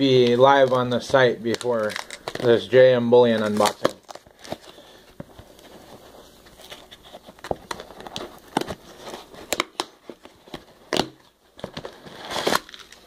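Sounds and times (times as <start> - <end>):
package and packing material crinkling: 0.0 - 13.0.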